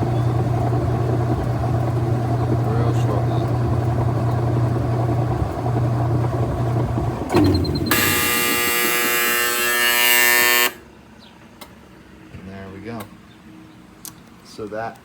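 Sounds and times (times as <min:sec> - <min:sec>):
washing machine motor humming: 0:00.0 - 0:10.8
end-of-cycle buzzer: 0:07.3 - 0:10.8.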